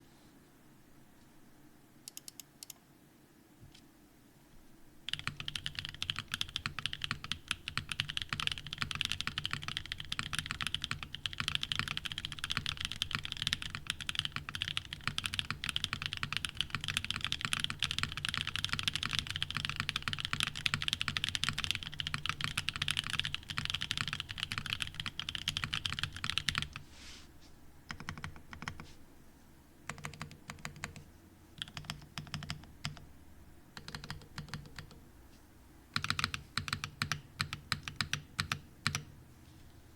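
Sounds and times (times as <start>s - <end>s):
typing on mechanical keyboard: 5.1s - 26.8s, 27.9s - 28.8s, 29.9s - 31.0s, 31.6s - 33.0s, 33.8s - 35.0s, 36.0s - 39.1s.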